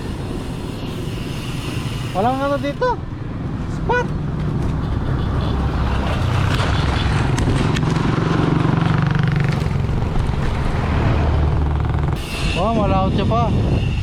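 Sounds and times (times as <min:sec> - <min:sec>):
road traffic: 0:00.0 - 0:14.0
wind rumble: 0:05.7 - 0:14.0.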